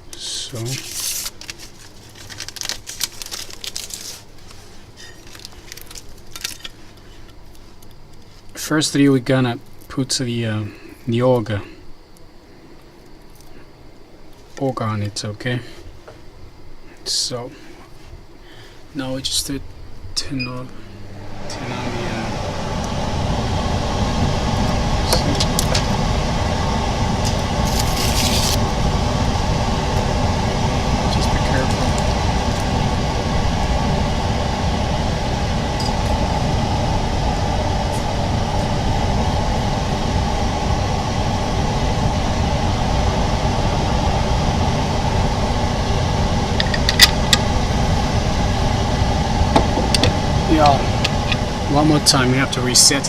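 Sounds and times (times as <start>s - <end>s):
plastic film crinkling: 0.7s - 8.4s, 27.6s - 28.6s
machine motor humming: 20.1s - 53.0s.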